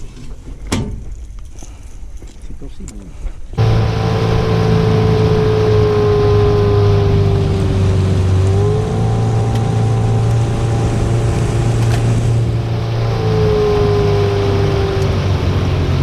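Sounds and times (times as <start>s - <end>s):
motorboat engine running: 3.6s - 16.0s.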